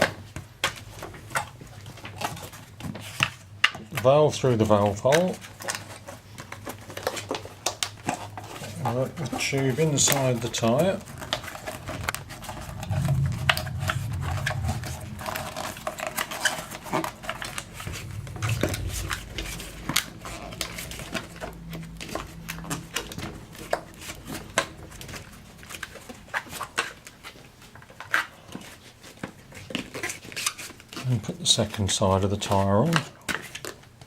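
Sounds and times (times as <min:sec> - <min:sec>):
low rumbling handling noise: 0:09.8 - 0:25.4.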